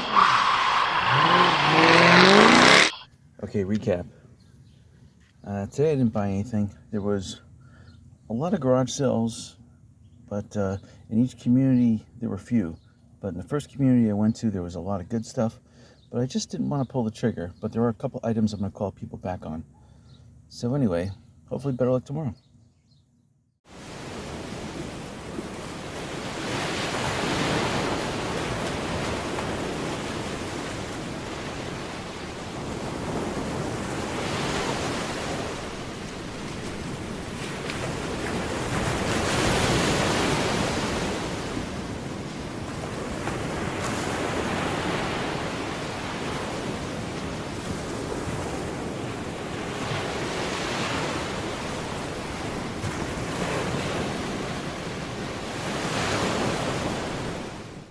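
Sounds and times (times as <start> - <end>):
ocean waves breaking: 0.0 - 4.0, 23.7 - 57.9.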